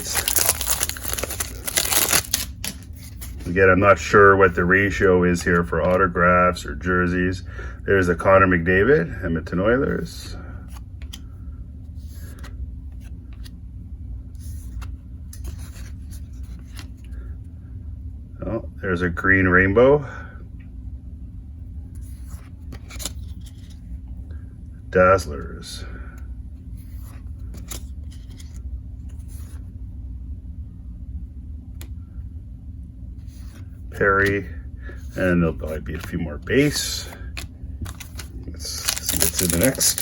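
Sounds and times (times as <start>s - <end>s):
cards being flipped through: 0.0s - 3.9s, 14.4s - 17.2s, 22.0s - 23.8s, 26.8s - 29.6s, 33.2s - 40.0s
steady low hum: 0.0s - 40.0s.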